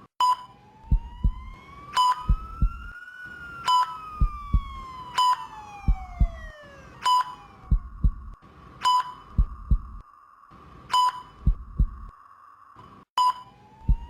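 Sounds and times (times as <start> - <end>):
monitor beep: 0.2 - 1.4, 2.0 - 3.0, 3.6 - 10.0, 10.9 - 12.1, 13.2 - 14.0
rising and falling siren tone: 0.5 - 8.4, 13.4 - 14.0
heartbeat thumps: 0.9 - 3.0, 4.2 - 5.0, 5.8 - 6.6, 7.6 - 8.4, 9.2 - 10.0, 11.3 - 12.1.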